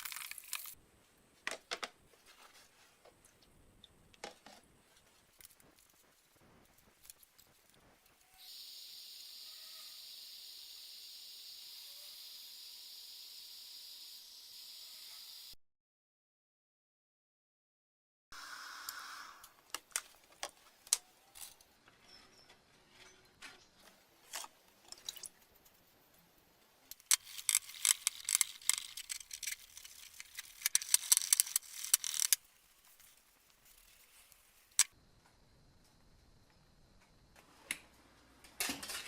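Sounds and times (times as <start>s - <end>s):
rapid clicking and scraping: 26.9s - 34.9s
small metal parts clinking: 26.9s - 34.9s.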